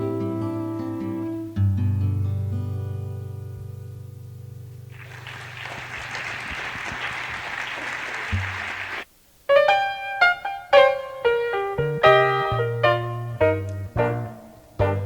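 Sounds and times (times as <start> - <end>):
audience applauding: 4.9 - 9.1
piano playing: 9.5 - 15.0.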